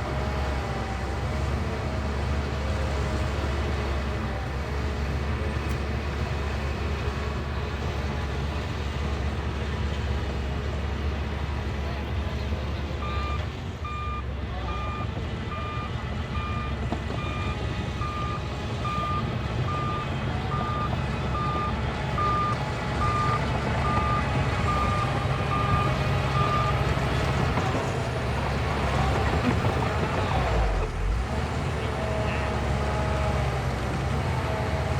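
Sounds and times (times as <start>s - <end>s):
bulldozer diesel engine running: 0.0s - 34.9s
reversing alarm beeping: 13.0s - 26.9s.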